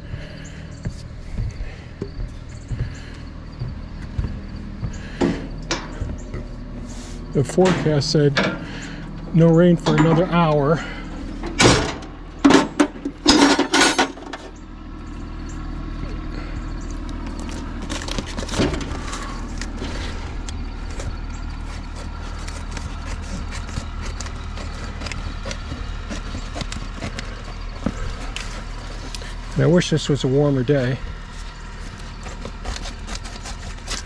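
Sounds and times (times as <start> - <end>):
mechanical hum: 0.0 - 34.0
loud rasping bursts: 17.8 - 34.0.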